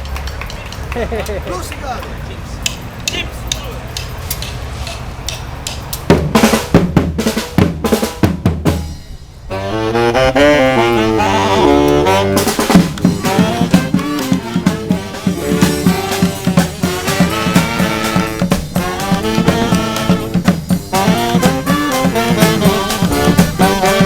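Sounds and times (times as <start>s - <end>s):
snare and bass drums: 2.6s - 9.2s, 11.8s - 24.0s
horns playing a melody: 9.5s - 24.0s.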